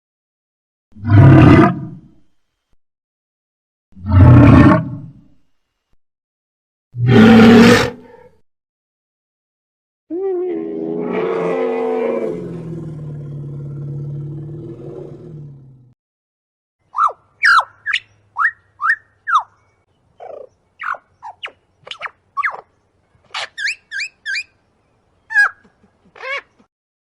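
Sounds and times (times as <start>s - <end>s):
creature low roar: 7.0s - 8.3s, 10.5s - 16.0s
high creature chirps and squeaks: 23.3s - 24.5s, 25.3s - 25.6s.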